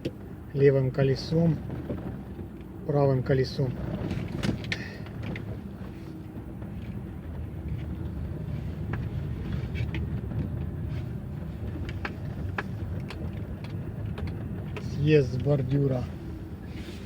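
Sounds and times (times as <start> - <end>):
car engine low rumble: 0.0 - 17.0.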